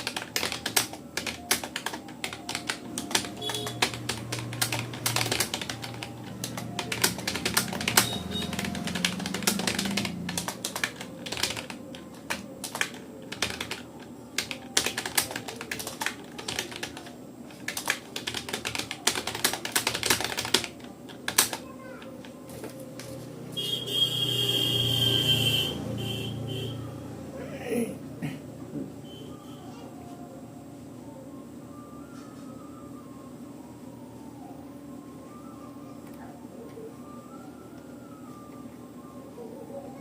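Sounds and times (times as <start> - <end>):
keyboard typing clicks: 0.0 - 22.4.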